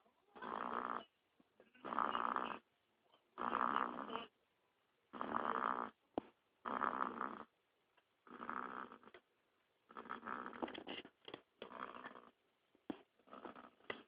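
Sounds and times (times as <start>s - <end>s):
baby snoring: 9.9s - 10.7s.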